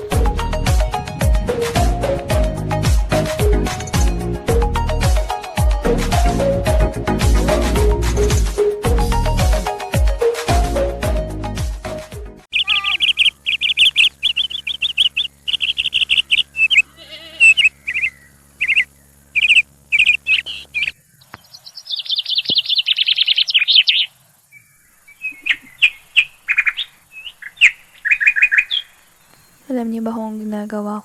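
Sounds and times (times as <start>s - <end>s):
small birds chirping: 12.5s - 31.0s.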